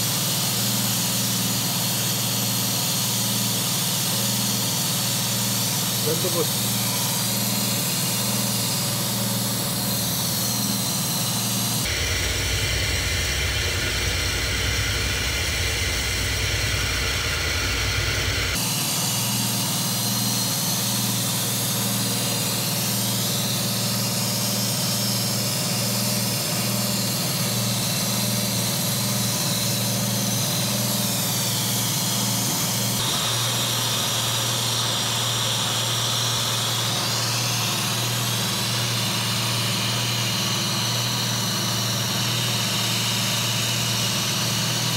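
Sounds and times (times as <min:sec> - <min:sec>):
car engine idling: 0:04.7 - 0:23.5.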